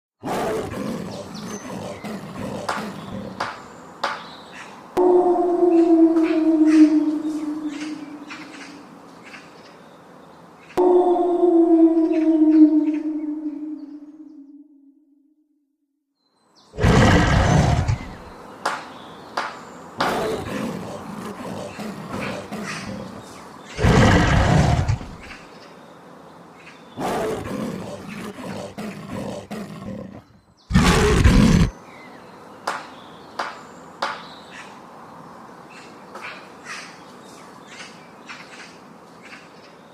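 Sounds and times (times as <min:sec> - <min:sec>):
leopard calling: 0:00.2 - 0:03.5, 0:05.0 - 0:08.9, 0:16.8 - 0:18.3, 0:20.0 - 0:25.4, 0:27.0 - 0:31.7.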